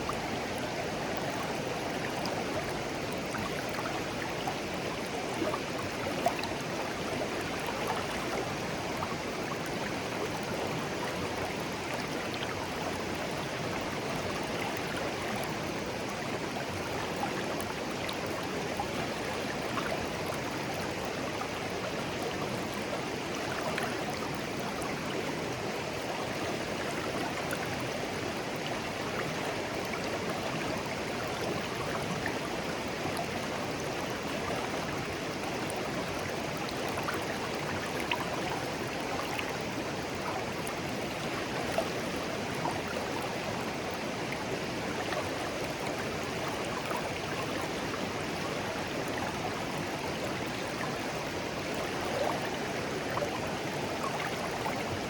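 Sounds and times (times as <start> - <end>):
stream babbling over stones: 0.0 - 55.0.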